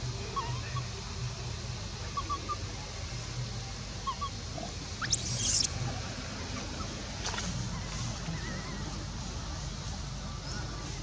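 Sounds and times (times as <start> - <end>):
monkey shrill scream: 5.0 - 5.7
faint high chirps: 5.0 - 5.8.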